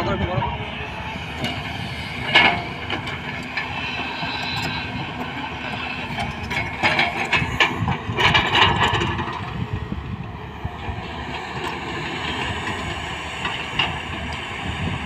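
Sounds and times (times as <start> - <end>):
excavator diesel engine: 0.0 - 15.0
metallic clanking and clatter: 6.1 - 9.5.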